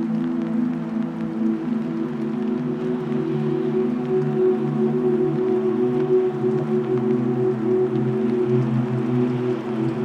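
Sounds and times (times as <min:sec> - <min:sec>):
faint rain hiss: 0:00.0 - 0:10.0
slow ambient music: 0:00.0 - 0:10.0.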